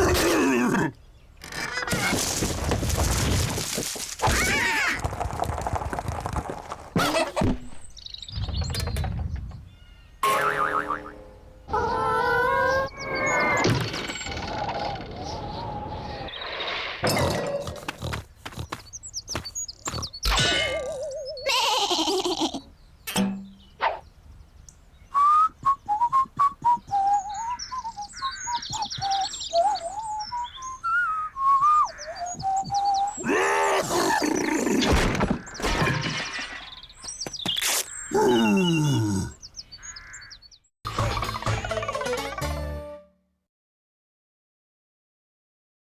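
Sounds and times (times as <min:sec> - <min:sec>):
deep falling animal calls: 0:00.0 - 0:07.3, 0:10.5 - 0:18.9, 0:37.9 - 0:40.0
music: 0:40.9 - 0:43.4.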